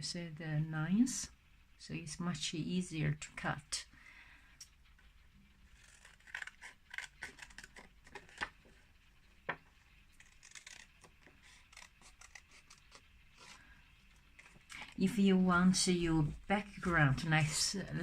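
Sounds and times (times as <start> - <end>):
scissors snipping paper: 5.8 - 8.5, 10.2 - 13.6.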